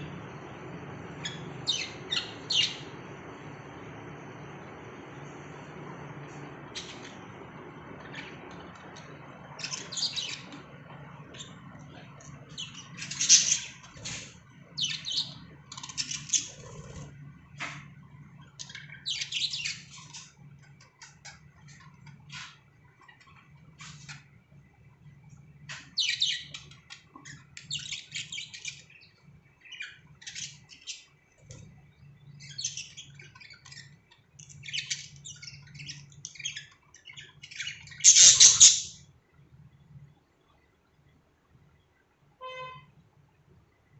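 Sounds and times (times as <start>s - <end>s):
low steady hum: 0.0s - 43.9s
budgerigars chirping and squawking: 1.2s - 2.9s, 6.8s - 7.2s, 9.0s - 10.6s, 12.4s - 17.7s, 18.5s - 20.4s, 25.7s - 31.6s, 32.3s - 39.1s.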